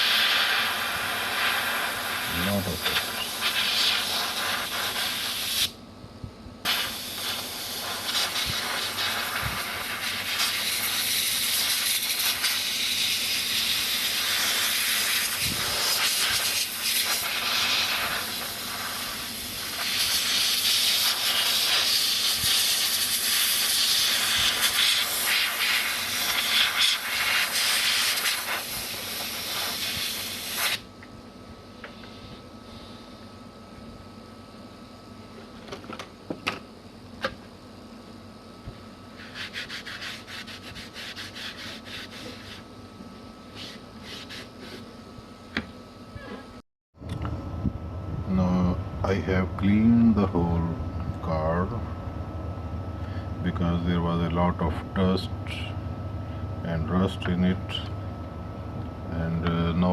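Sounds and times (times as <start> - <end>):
aerosol spray hissing: 6.7 - 30.8.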